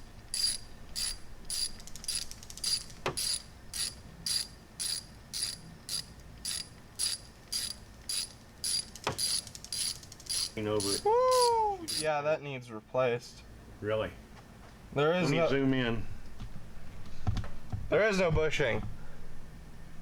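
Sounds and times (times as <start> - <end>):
ratchet wrench clicking: 0.3 - 12.1.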